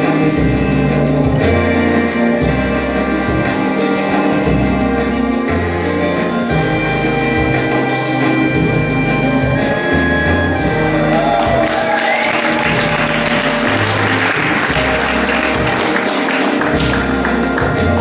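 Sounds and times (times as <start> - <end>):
show music with stepping bass: 0.0 - 18.0
audience applauding: 11.1 - 18.0.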